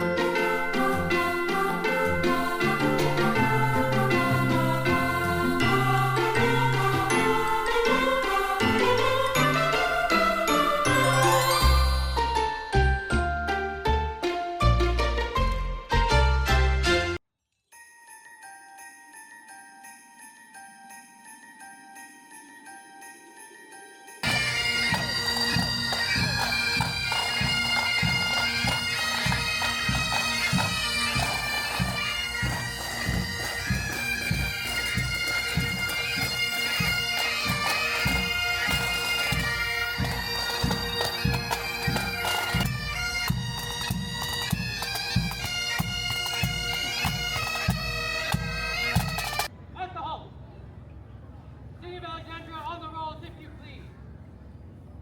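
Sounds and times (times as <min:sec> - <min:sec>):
bagpipes playing: 0:02.4 - 0:11.8, 0:24.2 - 0:49.5
drums beating: 0:24.2 - 0:49.5.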